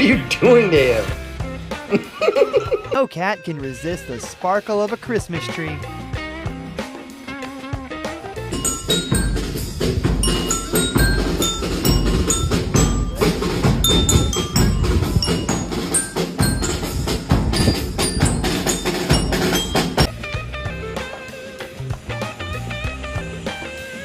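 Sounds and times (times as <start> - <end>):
chiming bell-like notes: 8.5 - 20.1
dense percussive beat: 8.5 - 20.9.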